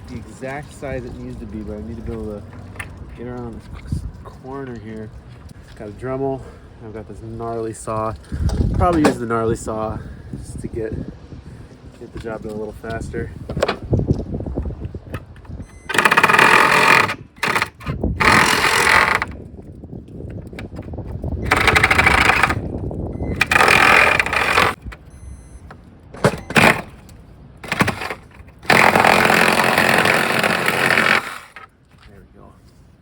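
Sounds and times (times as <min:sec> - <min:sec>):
power saw cutting: 0:15.9 - 0:19.3, 0:21.4 - 0:22.6, 0:23.3 - 0:24.8, 0:27.6 - 0:31.7.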